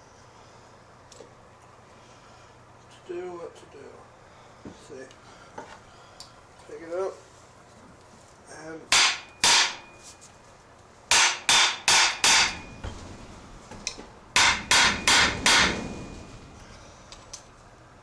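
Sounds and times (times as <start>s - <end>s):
hammer striking metal flywheel: 8.9s - 10.0s, 11.1s - 13.0s, 14.4s - 16.4s.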